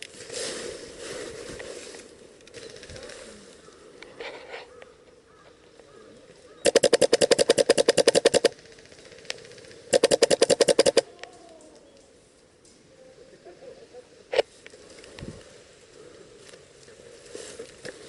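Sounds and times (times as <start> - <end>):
airsoft gun automatic bursts: 6.6 - 8.9, 9.9 - 11.0.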